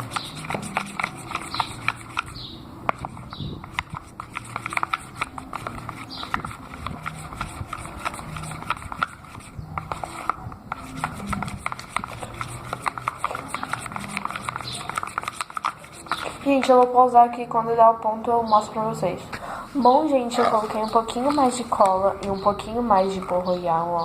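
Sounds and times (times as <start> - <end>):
slime squelching while stirred: 0.0 - 16.8.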